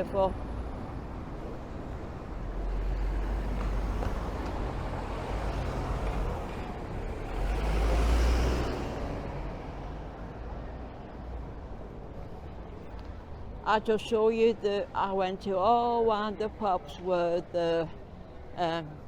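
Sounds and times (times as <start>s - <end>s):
road traffic passing: 0.0s - 19.0s
vehicle passing close: 2.9s - 9.6s.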